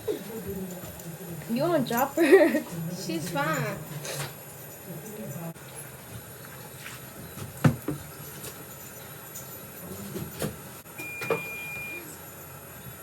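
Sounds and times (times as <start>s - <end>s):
high electronic beep: 11.0s - 12.0s.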